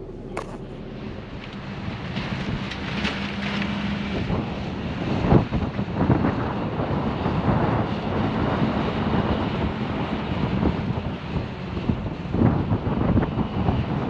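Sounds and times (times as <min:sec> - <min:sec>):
engine humming: 0:00.0 - 0:04.7.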